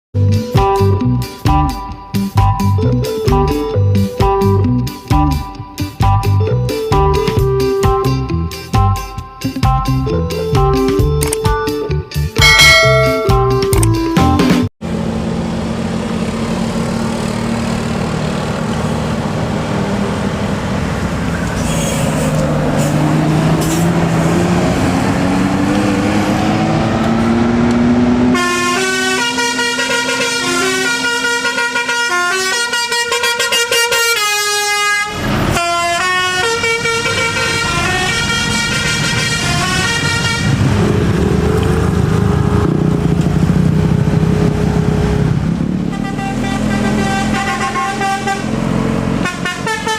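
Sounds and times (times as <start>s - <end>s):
bus musical horn tune: 0.2s - 13.7s, 28.2s - 40.7s, 45.8s - 49.9s
bus engine running: 0.2s - 49.9s.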